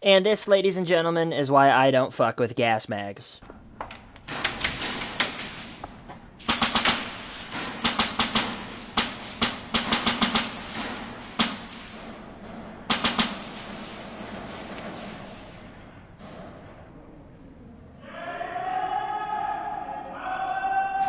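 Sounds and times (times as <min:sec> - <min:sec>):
airsoft gunshots: 0:03.4 - 0:16.4.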